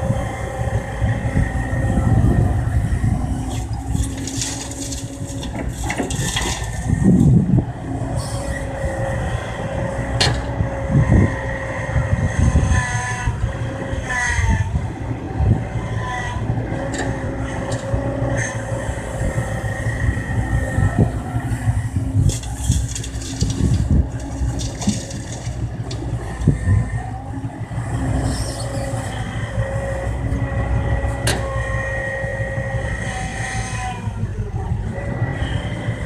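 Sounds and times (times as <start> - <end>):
excavator engine and hydraulics whine: 0.0 - 36.0.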